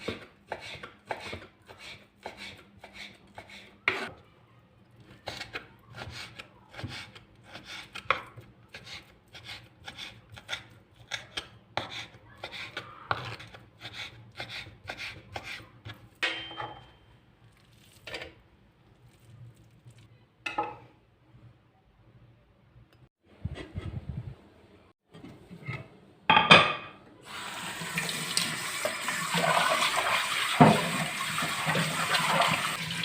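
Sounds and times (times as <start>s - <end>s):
knife chopping on cutting board: 0.0s - 4.0s.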